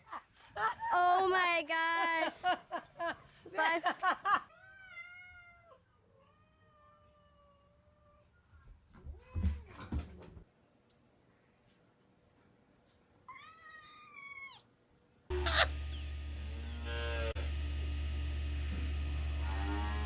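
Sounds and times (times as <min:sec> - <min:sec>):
cat meowing: 0:04.6 - 0:08.3, 0:13.3 - 0:14.7
low animal calls: 0:15.3 - 0:17.4
loud low hum: 0:15.3 - 0:20.0.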